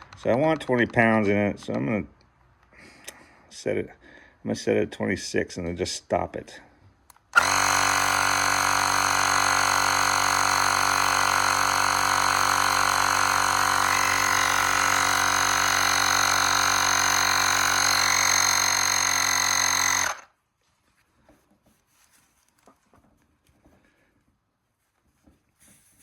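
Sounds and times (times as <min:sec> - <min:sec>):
tire inflator compressor running: 0:07.3 - 0:20.3.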